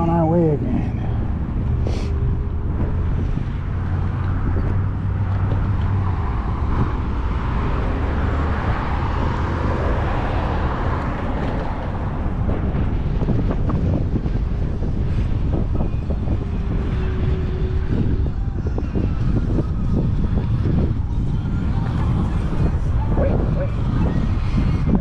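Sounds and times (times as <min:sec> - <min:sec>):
scooter road noise: 0:00.0 - 0:25.0
wind buffeting microphone: 0:00.0 - 0:25.0.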